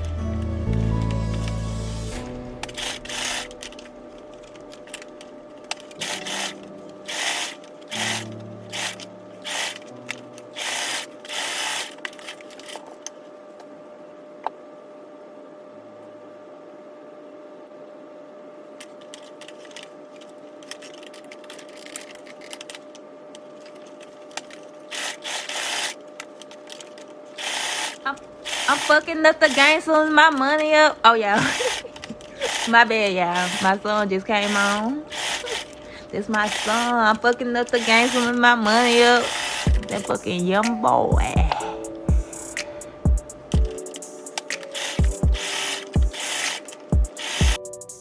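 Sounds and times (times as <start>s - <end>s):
sewing machine stitching: 2.5s - 3.8s, 6.0s - 12.9s, 24.9s - 26.0s, 27.4s - 29.8s, 31.4s - 41.5s, 44.4s - 47.6s.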